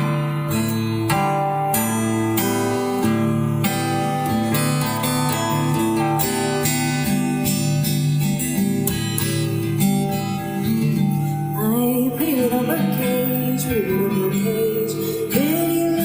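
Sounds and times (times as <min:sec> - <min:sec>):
acoustic guitar strumming: 0:00.0 - 0:16.0.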